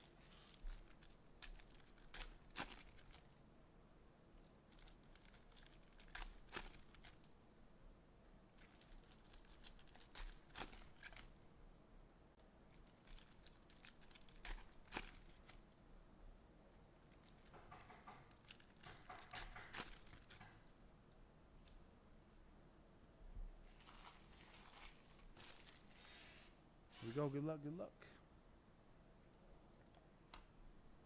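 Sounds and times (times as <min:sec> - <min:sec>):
wrappers crinkling and tearing: 0:00.0 - 0:03.4, 0:04.7 - 0:07.3, 0:08.6 - 0:11.3, 0:12.7 - 0:15.6, 0:18.4 - 0:20.4, 0:23.7 - 0:26.2.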